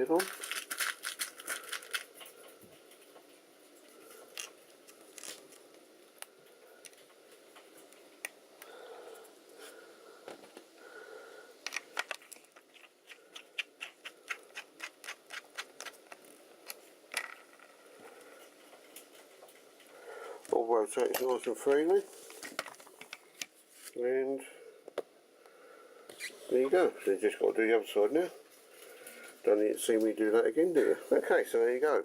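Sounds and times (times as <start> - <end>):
small parts and tools clicking: 11.6 - 17.8.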